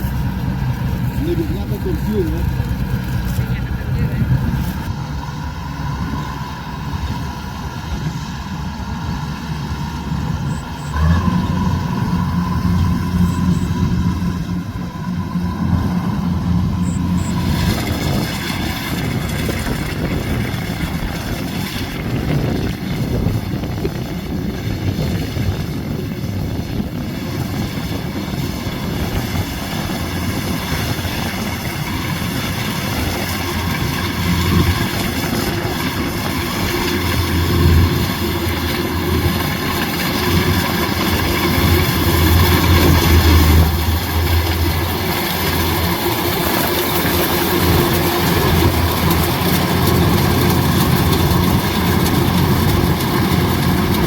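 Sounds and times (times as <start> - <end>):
combine harvester engine drone: 0.0 - 54.0.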